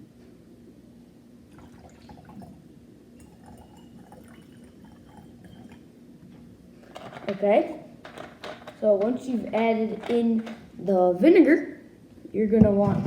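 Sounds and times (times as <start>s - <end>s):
liquid pouring into glass jar: 1.5s - 5.9s.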